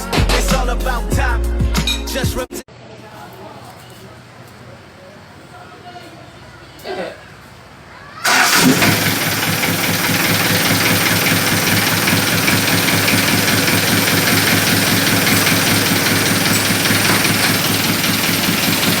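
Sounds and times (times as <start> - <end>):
diesel engine idling: 8.2 - 19.0.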